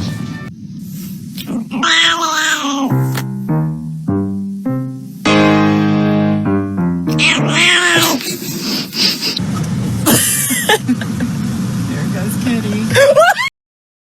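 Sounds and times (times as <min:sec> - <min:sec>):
hiss: 0:00.6 - 0:03.1, 0:07.9 - 0:10.7
cat meowing: 0:01.4 - 0:03.1, 0:07.1 - 0:08.8
tune of held notes: 0:02.9 - 0:07.6.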